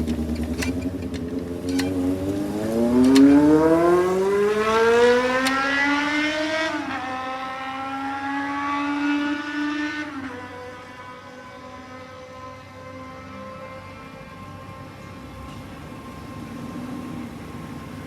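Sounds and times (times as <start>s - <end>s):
electric train motor whine: 2.4s - 6.2s.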